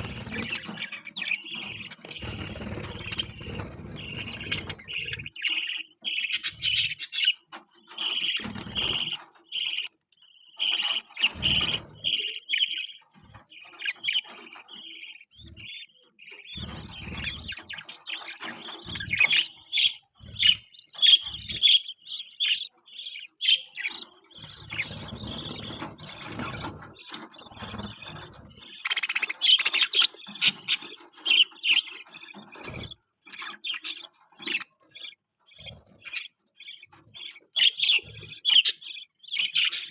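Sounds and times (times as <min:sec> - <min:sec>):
budgerigars chirping: 0:00.0 - 0:39.9.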